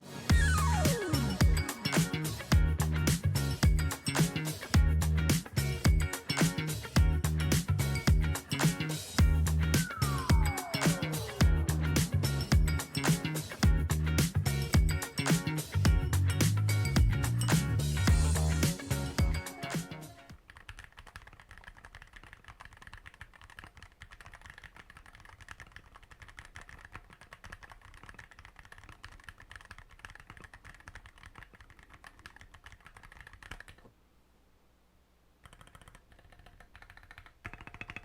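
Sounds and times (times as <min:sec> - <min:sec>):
music: 0:00.0 - 0:20.3.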